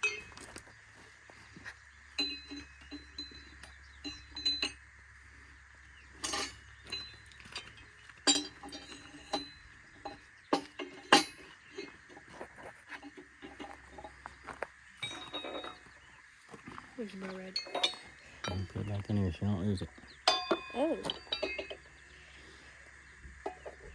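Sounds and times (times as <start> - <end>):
metal tools clinking and knocking: 0.0 - 0.6, 2.1 - 4.9, 6.0 - 15.9, 17.2 - 19.2, 20.2 - 22.0.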